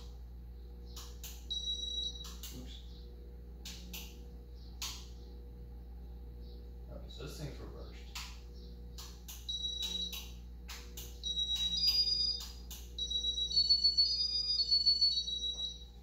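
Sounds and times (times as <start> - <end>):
electronic beeping: 9.4 - 10.3, 11.2 - 16.0
alternating two-note electronic tones: 11.2 - 16.0.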